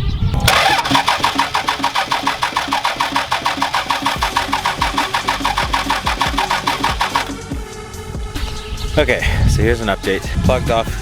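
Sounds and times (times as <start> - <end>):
diesel engine cranking: 0.4 - 7.4.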